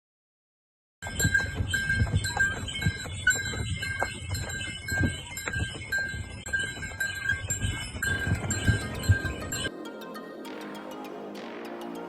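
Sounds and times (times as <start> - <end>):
goat bells clinking and ringing: 1.0 - 9.7
scattered knocks: 1.0 - 9.7.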